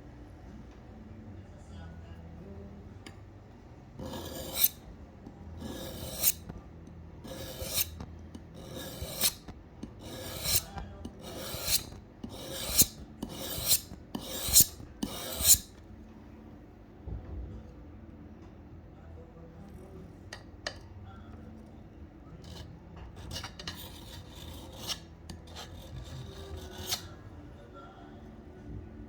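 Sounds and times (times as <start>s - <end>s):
knife rasping on sharpener: 4.0s - 4.8s, 5.6s - 6.6s, 7.2s - 15.8s, 22.5s - 27.2s.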